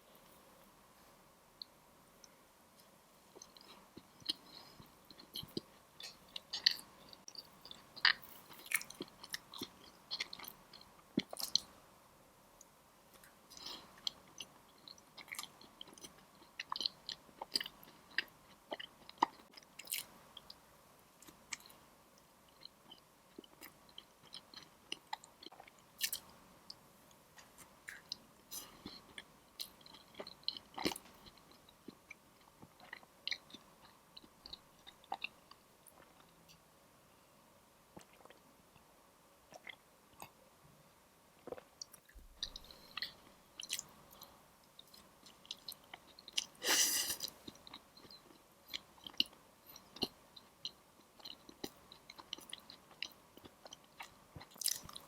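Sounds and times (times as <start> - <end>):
quiet chewing: 2.8 - 11.7, 38.0 - 38.9, 41.4 - 55.0.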